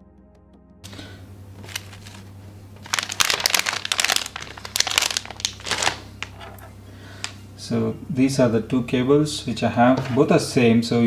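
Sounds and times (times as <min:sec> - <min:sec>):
plastic packaging crinkling: 0:00.9 - 0:07.5.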